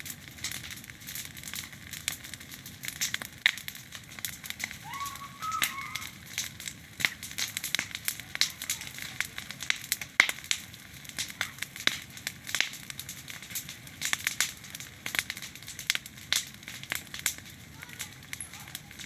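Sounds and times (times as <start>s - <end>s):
fire sharp pops: 0.0s - 19.0s
wood fire crackling: 0.0s - 19.0s.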